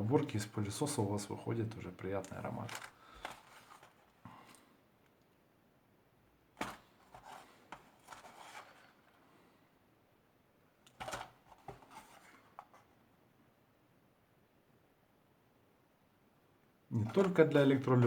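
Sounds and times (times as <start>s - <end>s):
rustles and clicks: 2.2s - 4.6s, 6.6s - 9.2s.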